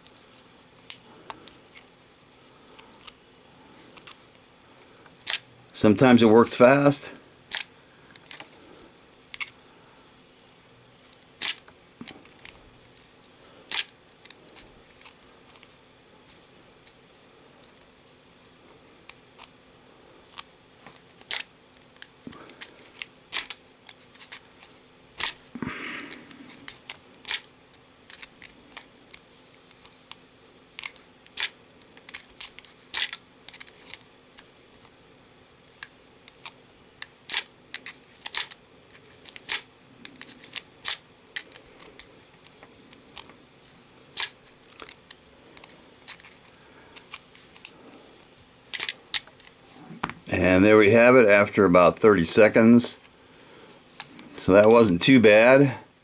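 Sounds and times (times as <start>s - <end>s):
small metal clicks of lock picking: 23.3s - 24.5s, 48.8s - 49.3s.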